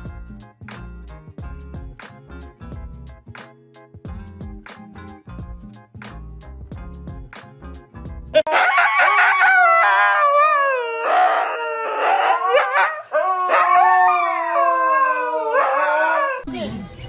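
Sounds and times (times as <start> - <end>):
background music: 0.0 - 17.0
dog howling: 8.5 - 16.5.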